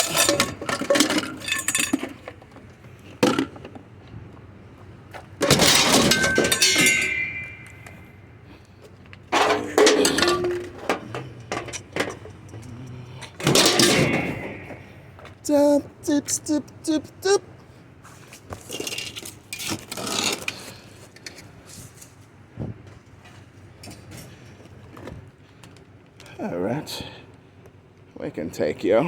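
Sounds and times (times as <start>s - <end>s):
metallic ringing: 5.5s - 8.3s, 9.4s - 15.2s
scrap crashing onto a pile: 9.3s - 12.3s.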